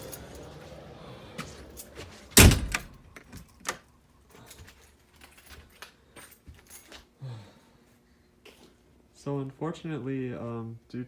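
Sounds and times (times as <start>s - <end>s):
door clicks and knocks: 2.4s - 3.0s
door thunk: 2.4s - 3.0s.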